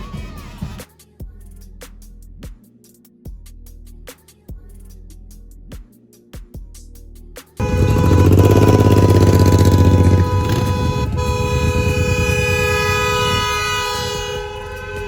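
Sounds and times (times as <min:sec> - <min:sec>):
car horns honking: 0:07.6 - 0:15.0
engine rumble: 0:07.6 - 0:15.0.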